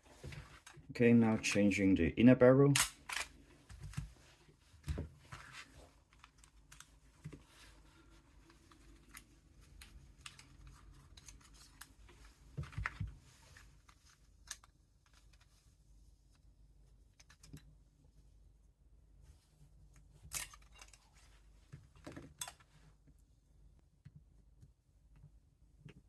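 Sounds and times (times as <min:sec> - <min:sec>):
clicks of small parts handled: 0:14.4 - 0:15.5, 0:17.2 - 0:17.7, 0:20.2 - 0:21.1.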